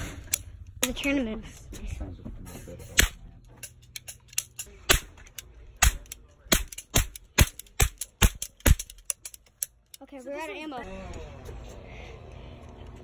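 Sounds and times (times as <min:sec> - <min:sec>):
toy cap gun cracks: 0:03.9 - 0:10.0.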